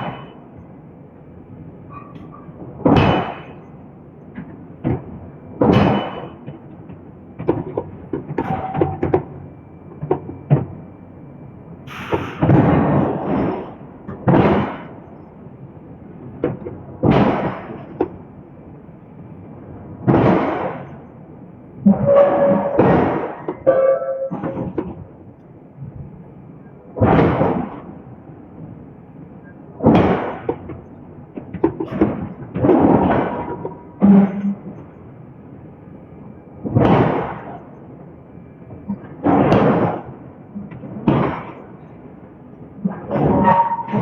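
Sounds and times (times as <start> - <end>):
forging hammer striking steel: 2.8 - 3.7, 5.6 - 6.6, 21.9 - 24.9.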